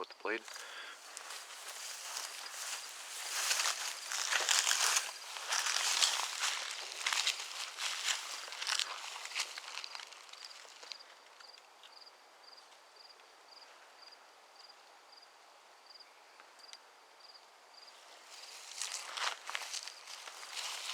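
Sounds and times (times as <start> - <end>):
cricket chirping: 0.1 - 20.9
footsteps rustling through grass: 0.4 - 11.0, 18.0 - 20.9.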